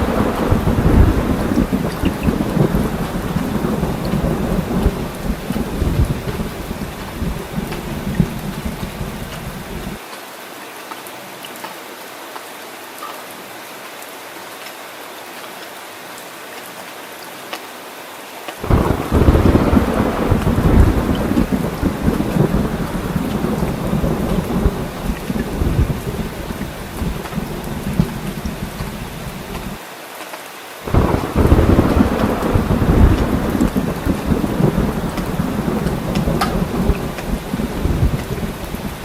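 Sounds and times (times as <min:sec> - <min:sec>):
deep thunder rumble: 0:00.0 - 0:10.0, 0:18.6 - 0:29.8, 0:30.9 - 0:39.0
heavy rain: 0:00.0 - 0:39.0.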